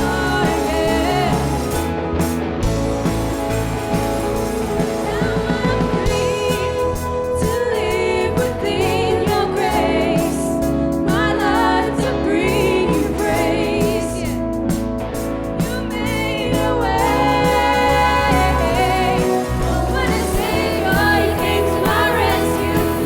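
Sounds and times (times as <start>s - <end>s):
people singing: 0.0s - 14.9s, 15.6s - 23.0s
band playing worship music: 0.0s - 23.0s.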